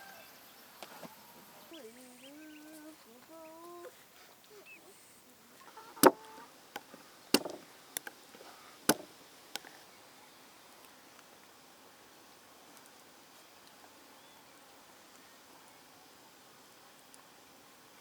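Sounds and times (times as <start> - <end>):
rooster crowing: 0.0 - 0.4
chopping knocks: 6.0 - 6.3, 7.4 - 7.6, 8.9 - 9.1.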